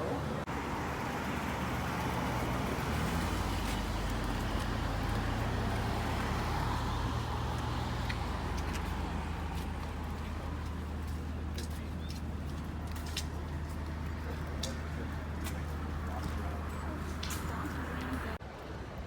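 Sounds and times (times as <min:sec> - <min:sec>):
vehicle engine humming: 0:00.0 - 0:18.4.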